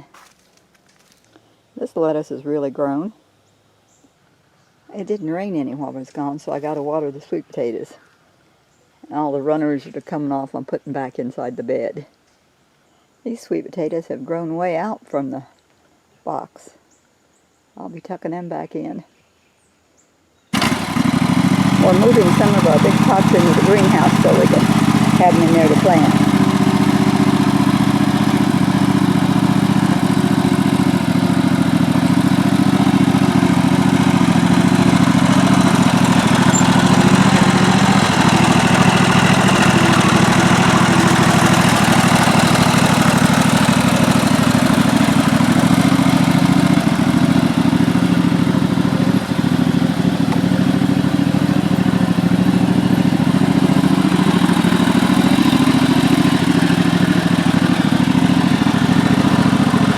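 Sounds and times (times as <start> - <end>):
engine running steadily: 20.6 - 59.9.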